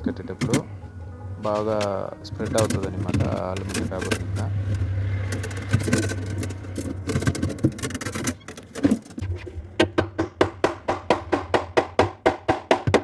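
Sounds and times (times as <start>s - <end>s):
steady low hum: 0.0s - 9.7s
small clicks and scrapes: 1.8s - 9.6s.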